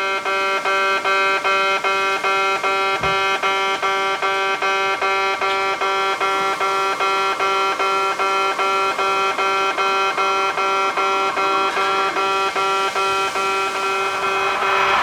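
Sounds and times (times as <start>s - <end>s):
level crossing alarm buzzing: 0.0s - 15.0s.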